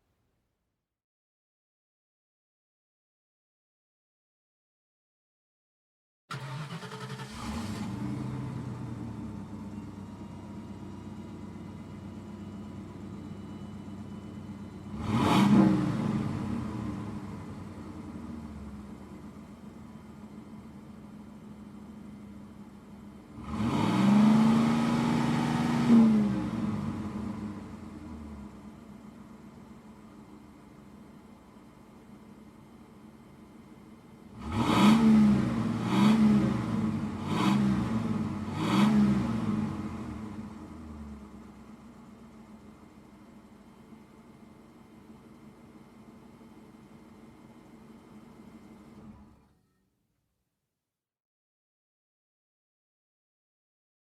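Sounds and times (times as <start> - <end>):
car engine running: 6.4 - 49.3.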